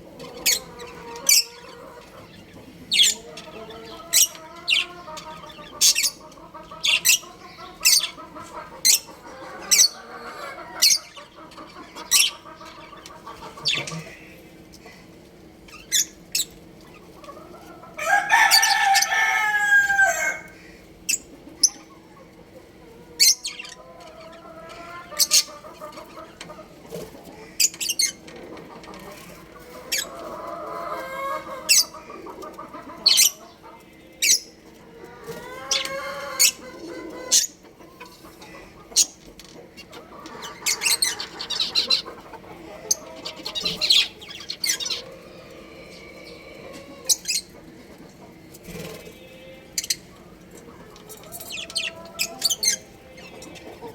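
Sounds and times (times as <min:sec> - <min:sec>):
chickens clucking: 0:00.0 - 0:53.9
budgerigars chirping: 0:00.2 - 0:15.0, 0:15.6 - 0:17.3, 0:23.1 - 0:26.6, 0:29.6 - 0:34.6, 0:35.6 - 0:45.1, 0:47.0 - 0:47.6, 0:49.8 - 0:53.9
rooster crowing: 0:18.0 - 0:20.6, 0:45.0 - 0:47.2.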